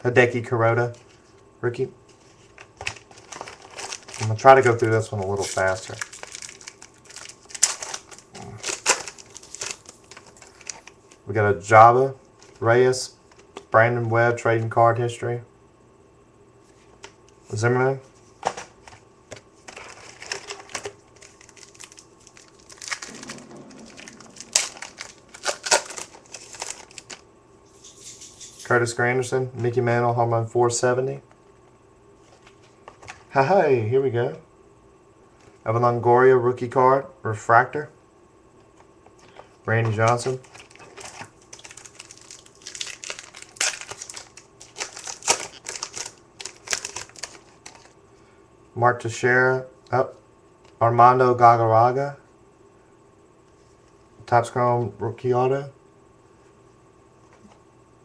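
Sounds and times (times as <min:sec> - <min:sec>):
trading cards shuffled by hand: 0:02.2 - 0:11.0
cards being handled: 0:02.2 - 0:11.2, 0:18.4 - 0:27.2, 0:39.2 - 0:47.9
wrapper crinkling: 0:02.5 - 0:11.3, 0:19.7 - 0:27.2, 0:40.0 - 0:48.0.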